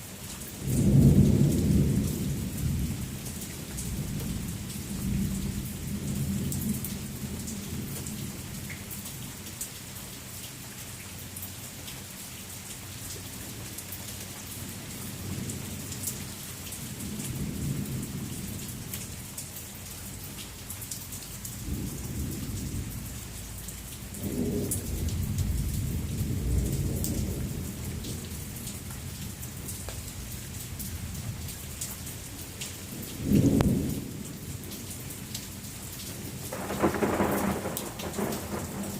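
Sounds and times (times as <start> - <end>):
rain hissing: 0.0 - 38.9
thunder rumbling: 24.1 - 31.5, 36.3 - 38.9
sharp thunder clap: 36.5 - 38.9.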